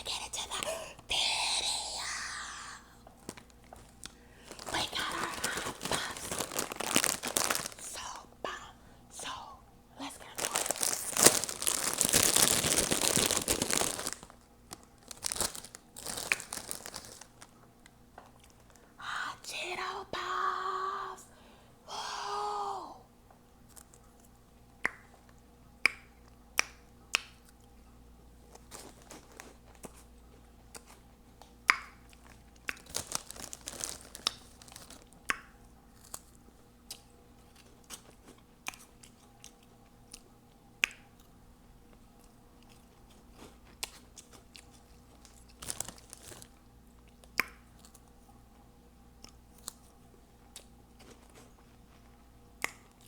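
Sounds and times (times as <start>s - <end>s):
person chewing crunchy snacks: 1.4s - 8.6s, 10.0s - 17.5s, 28.5s - 30.1s, 31.9s - 35.3s, 35.9s - 40.3s, 41.2s - 48.1s, 50.5s - 53.0s
mouth clicks and smacks: 24.8s - 27.7s, 30.7s - 32.9s, 35.2s - 35.6s, 37.8s - 41.4s, 47.1s - 48.0s, 52.6s - 53.0s.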